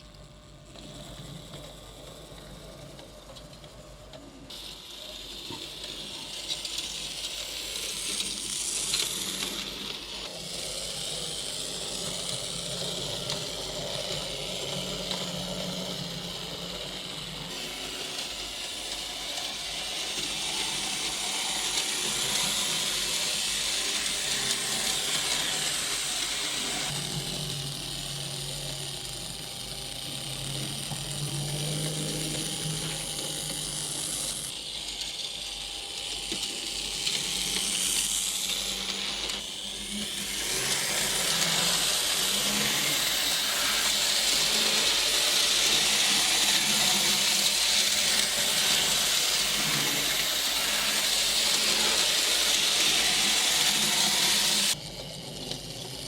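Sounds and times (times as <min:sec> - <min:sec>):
model train motor whirring: 0:00.0 - 0:56.0.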